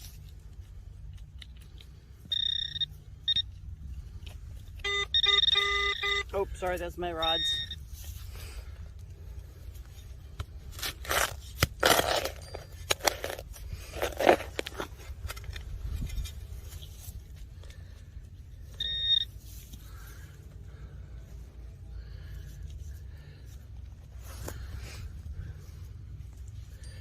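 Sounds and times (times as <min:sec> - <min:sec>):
metal detector beep: 0:02.2 - 0:03.6, 0:04.7 - 0:08.2, 0:18.6 - 0:19.7
digging tool scraping soil: 0:09.8 - 0:17.4.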